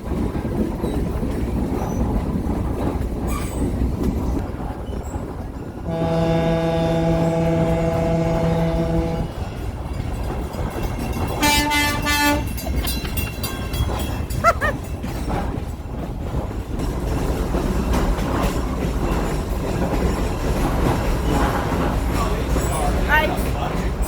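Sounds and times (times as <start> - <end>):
train rumbling on track: 0.0 - 24.0
locomotive horn blast: 5.8 - 9.5, 11.4 - 12.6.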